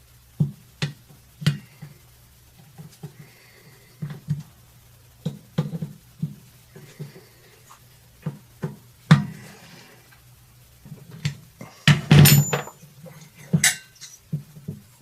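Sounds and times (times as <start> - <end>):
metal tools clinking: 12.1 - 12.8.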